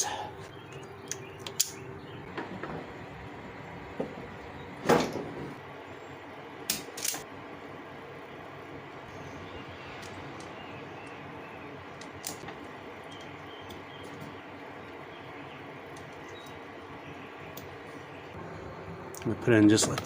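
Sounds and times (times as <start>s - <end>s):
clicks and knocks of tools: 0.7s - 2.8s, 6.7s - 7.2s, 12.0s - 14.3s.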